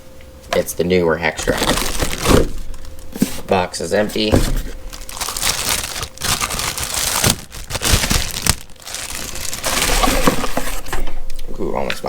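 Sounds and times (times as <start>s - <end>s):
packaging crinkling and rustling: 0.5s - 11.2s.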